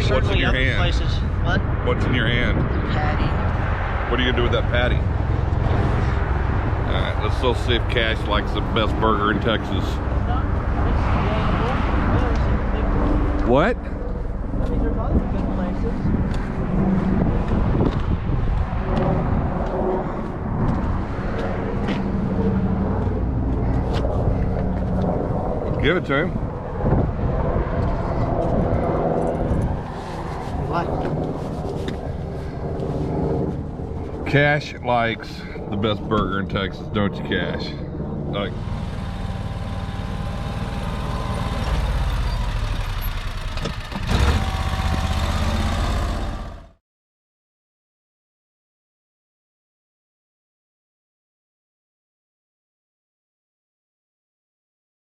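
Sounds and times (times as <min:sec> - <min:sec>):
vehicle engine rumbling: 0:00.0 - 0:46.8
car engine idling: 0:38.4 - 0:46.8.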